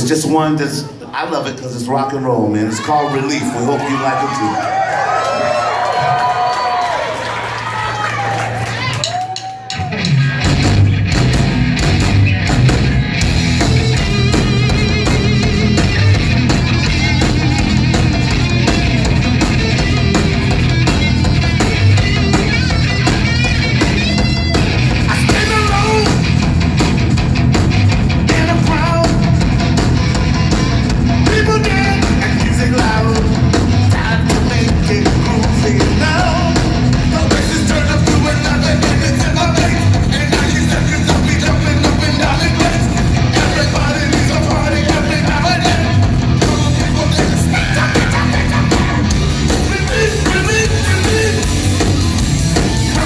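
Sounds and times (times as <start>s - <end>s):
punk rock band playing: 5.4s - 53.0s
person singing: 25.1s - 26.2s, 31.2s - 51.6s.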